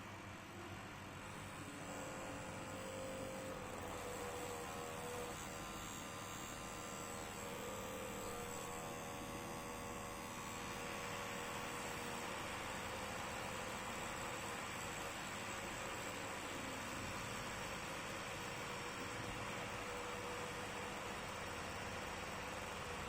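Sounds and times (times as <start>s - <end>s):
laptop fan whining: 0.0s - 23.0s.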